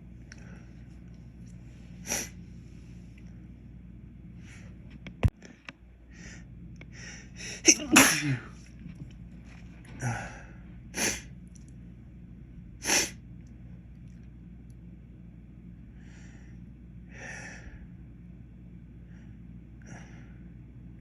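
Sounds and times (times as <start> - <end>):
man sneezing: 7.5 - 8.6.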